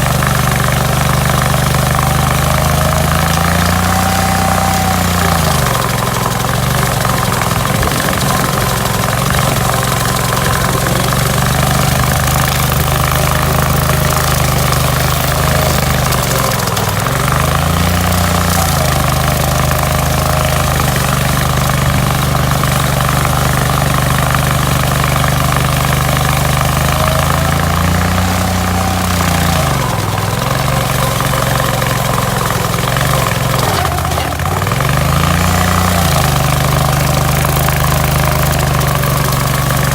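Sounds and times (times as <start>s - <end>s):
stump grinder engine running: 0.0s - 39.9s.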